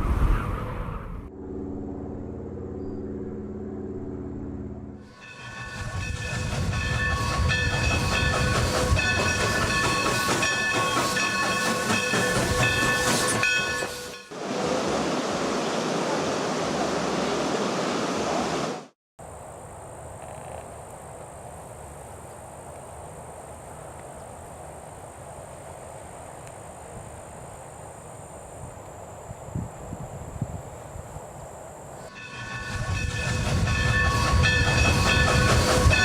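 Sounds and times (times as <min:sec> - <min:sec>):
low hum: 0:00.0 - 0:05.1.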